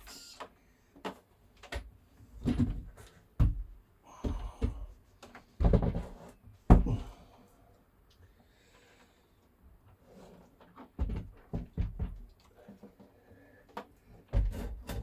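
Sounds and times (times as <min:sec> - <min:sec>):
knocks and thumps: 0:02.4 - 0:04.9, 0:05.6 - 0:07.1, 0:10.9 - 0:12.3.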